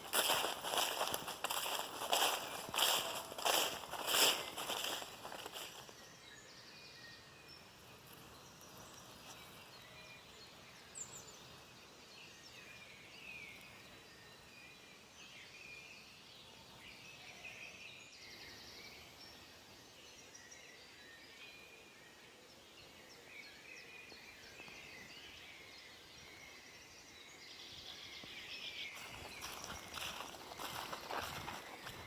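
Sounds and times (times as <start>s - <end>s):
crackling rustle: 0.0s - 6.0s
songbirds chirping: 0.0s - 32.0s.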